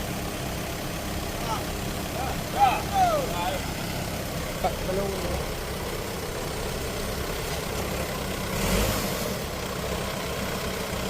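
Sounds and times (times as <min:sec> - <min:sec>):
diesel engine idling: 0:00.0 - 0:11.0.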